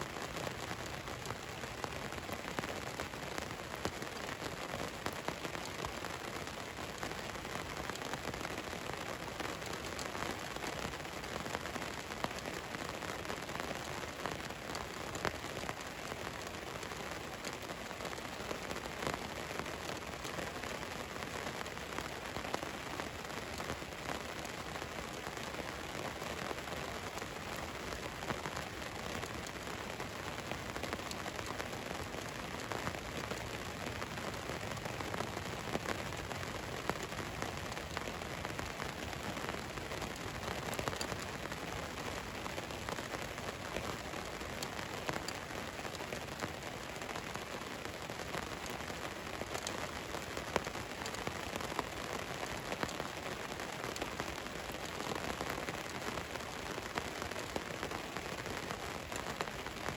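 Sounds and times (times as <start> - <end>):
rain on a van roof: 0.0 - 59.9.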